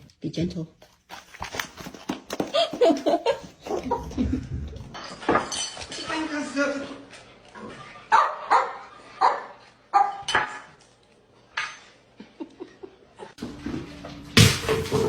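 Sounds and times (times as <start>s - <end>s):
dog barking: 8.1s - 10.3s.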